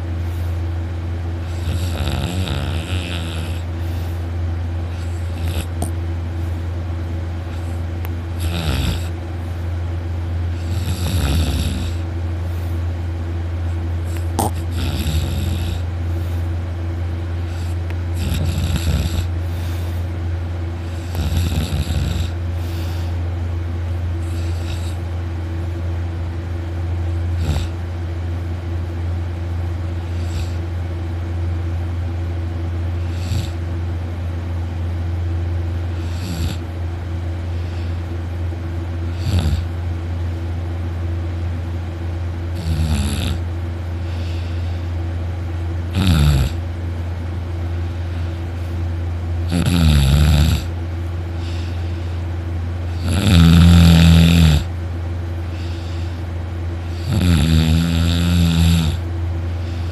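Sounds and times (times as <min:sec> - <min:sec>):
steady low hum: 0:00.0 - 0:59.9
man snoring loudly: 0:01.4 - 0:03.8, 0:04.9 - 0:06.0, 0:08.4 - 0:09.2, 0:10.5 - 0:12.1, 0:14.1 - 0:15.9, 0:17.5 - 0:19.8, 0:20.8 - 0:23.1, 0:24.2 - 0:25.0, 0:27.3 - 0:27.8, 0:30.1 - 0:30.6, 0:33.0 - 0:33.6, 0:35.9 - 0:36.7, 0:39.1 - 0:39.8, 0:42.6 - 0:43.5, 0:45.9 - 0:46.6, 0:49.4 - 0:50.8, 0:52.9 - 0:54.7, 0:56.8 - 0:59.9.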